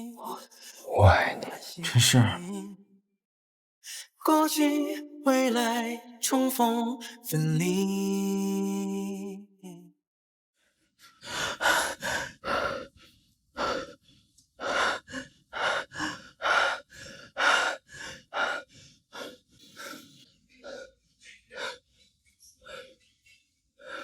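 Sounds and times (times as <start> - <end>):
person breathing hard: 11.1 - 22.0, 22.6 - 23.1, 23.8 - 24.0.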